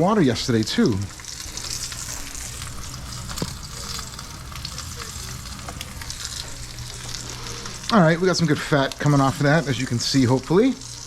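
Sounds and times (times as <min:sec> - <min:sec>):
meat fat sizzling in a pan: 0:00.0 - 0:11.0
fat popping: 0:01.6 - 0:07.9.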